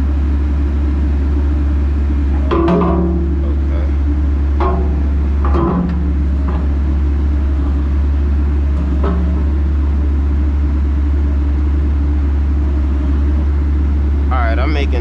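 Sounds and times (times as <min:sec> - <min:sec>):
diesel engine idling: 0:00.0 - 0:15.0
short knocks: 0:04.5 - 0:07.8.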